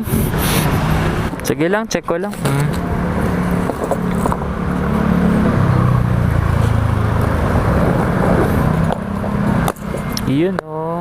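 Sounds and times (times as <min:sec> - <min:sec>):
scooter engine running: 0:02.4 - 0:10.3.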